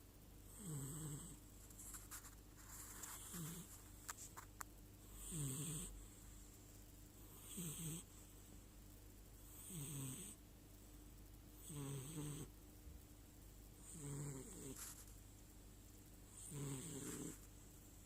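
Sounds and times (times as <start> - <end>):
cat snoring: 0.5 - 1.4, 3.2 - 3.7, 5.0 - 6.1, 7.3 - 8.1, 9.4 - 10.4, 11.6 - 12.5, 13.8 - 14.9, 16.3 - 17.5.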